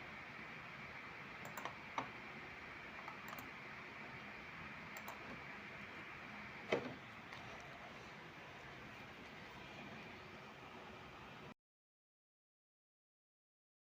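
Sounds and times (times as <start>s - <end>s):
steady background hiss: 0.0s - 11.5s
faint computer clicks: 1.4s - 2.1s, 3.0s - 3.5s, 4.9s - 5.4s.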